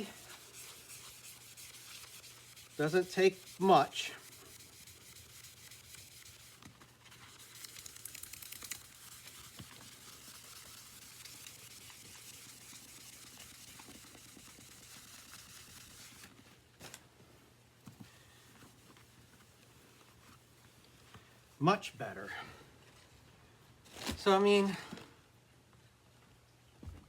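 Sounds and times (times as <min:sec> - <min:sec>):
scrubbing on plastic: 0:00.0 - 0:16.3.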